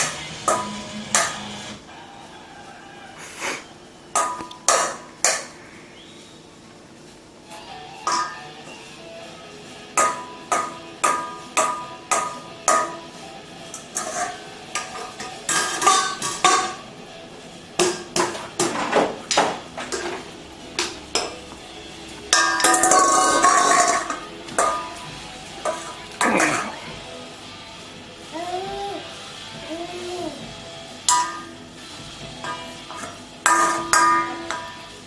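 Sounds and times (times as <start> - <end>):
metal pots and pans banging: 0.0 - 1.9, 4.1 - 5.6, 7.5 - 8.9, 9.8 - 27.1, 31.0 - 35.0.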